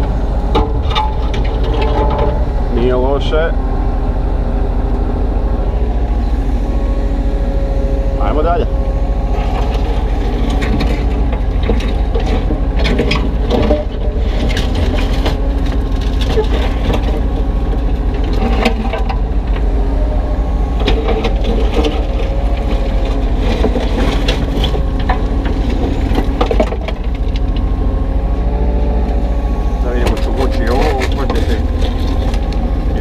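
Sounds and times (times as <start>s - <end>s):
excavator diesel engine running: 0.0s - 33.0s
concrete chunks clattering: 0.5s - 2.9s, 9.4s - 19.7s, 20.8s - 27.7s, 29.8s - 33.0s
bucket scraping through concrete: 9.2s - 19.7s, 29.8s - 33.0s.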